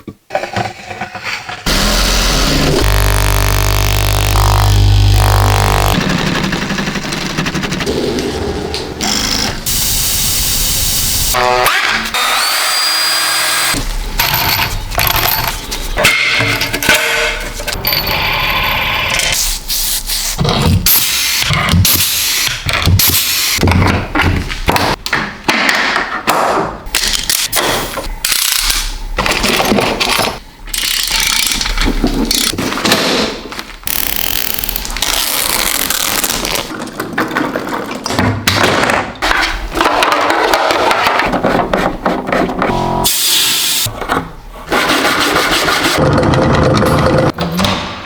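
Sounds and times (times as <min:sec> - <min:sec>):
power tool noise: 0:01.7 - 0:06.4, 0:09.0 - 0:13.8.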